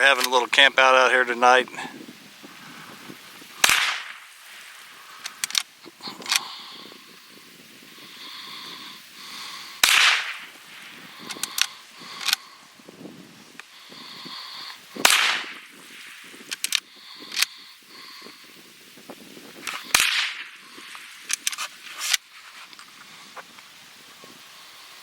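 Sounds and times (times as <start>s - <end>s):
rifle shots: 3.6s - 4.3s, 9.8s - 12.4s, 15.0s - 15.7s, 19.7s - 20.6s.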